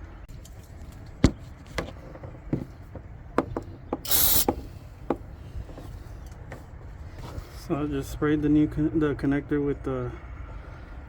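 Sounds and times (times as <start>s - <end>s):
aerosol can spraying hiss: 4.1s - 4.6s.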